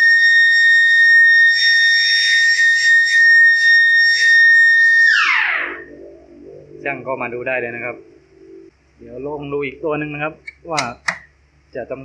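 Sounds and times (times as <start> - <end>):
siren high-pitched wail: 0.0 - 8.7.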